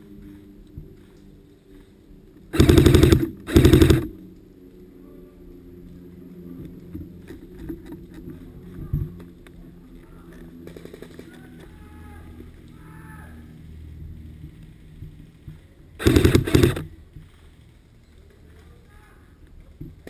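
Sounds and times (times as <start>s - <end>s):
airsoft rifle full-auto bursts: 2.5s - 4.1s, 16.0s - 17.0s.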